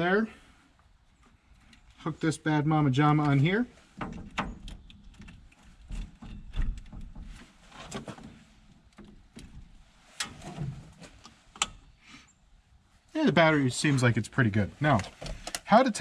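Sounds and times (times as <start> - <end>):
cables and clamps clicking and rattling: 4.0 - 11.8, 14.9 - 15.7.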